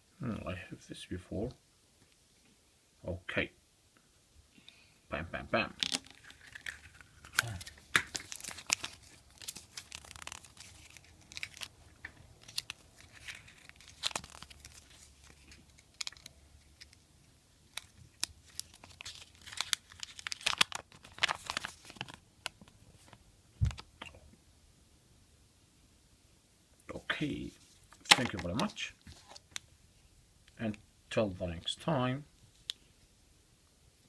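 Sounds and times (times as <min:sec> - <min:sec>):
foil wrapper crinkling and tearing: 0:05.8 - 0:17.0, 0:17.7 - 0:22.6.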